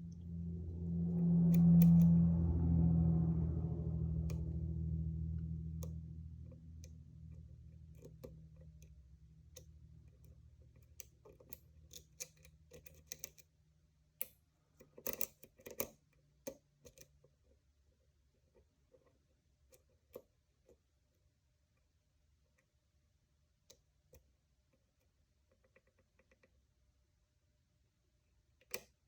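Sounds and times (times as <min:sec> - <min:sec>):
low hum: 0:00.0 - 0:10.8.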